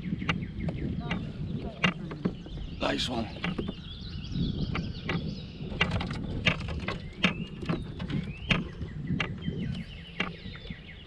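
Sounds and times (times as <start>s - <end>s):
birds chirping: 0.0s - 11.0s
sharp clicks and knocks: 0.1s - 2.7s, 3.3s - 3.8s, 4.6s - 10.5s.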